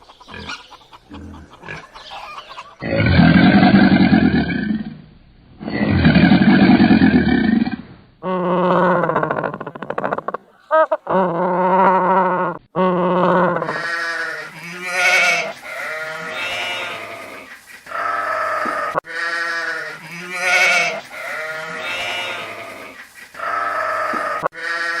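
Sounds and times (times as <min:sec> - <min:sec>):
sheep or goat bleating: 0:13.2 - 0:25.0.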